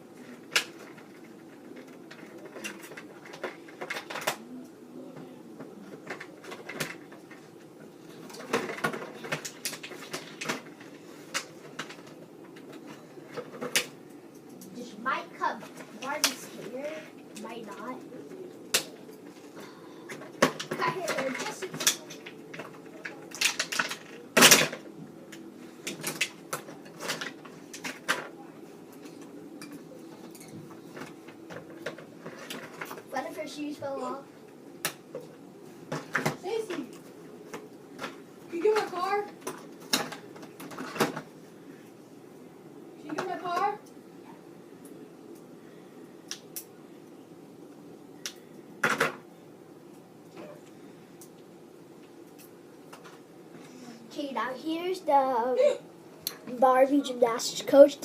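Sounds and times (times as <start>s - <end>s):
toy packaging rustling and rattling: 6.0s - 13.9s, 20.1s - 24.8s.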